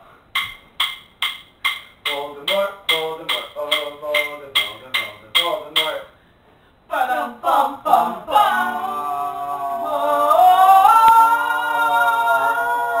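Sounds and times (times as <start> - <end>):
voices singing a cappella: 6.9 - 13.0.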